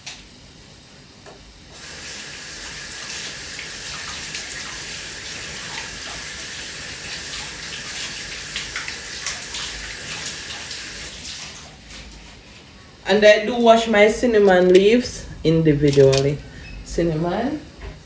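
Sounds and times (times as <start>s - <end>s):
hands rinsing leaves: 1.8s - 12.5s
tap water splashing into sink: 2.8s - 11.5s.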